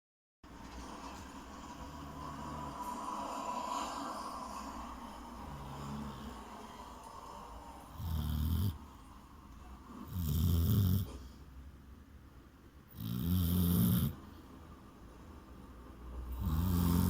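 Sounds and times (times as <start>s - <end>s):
dog breathing: 2.6s - 9.1s, 16.2s - 17.0s
dog snoring: 5.3s - 6.9s, 7.8s - 8.9s, 9.9s - 11.4s, 12.9s - 14.2s, 16.2s - 17.0s.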